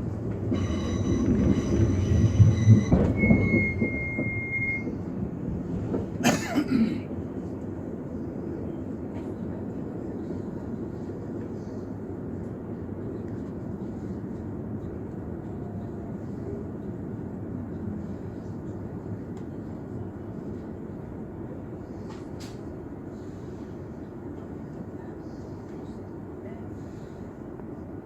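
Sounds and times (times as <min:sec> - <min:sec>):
train running rumble: 0:00.0 - 0:28.0.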